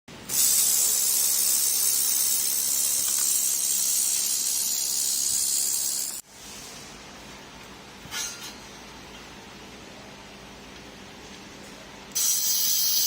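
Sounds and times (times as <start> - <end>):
laser welding gun hissing: 0.3 - 6.2, 12.2 - 13.0.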